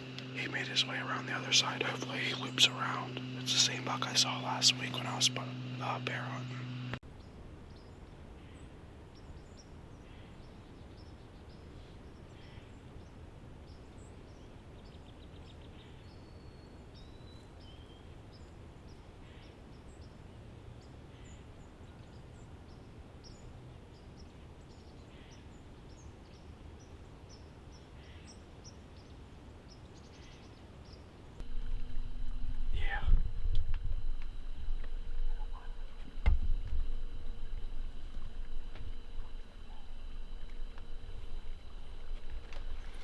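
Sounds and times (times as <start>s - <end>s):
small birds chirping: 0.0s - 43.0s
low background rumble: 31.2s - 43.0s.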